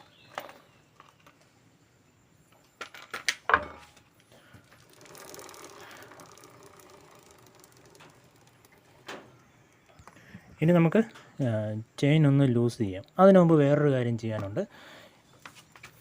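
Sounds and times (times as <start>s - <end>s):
fast mechanical ticking: 4.6s - 10.1s.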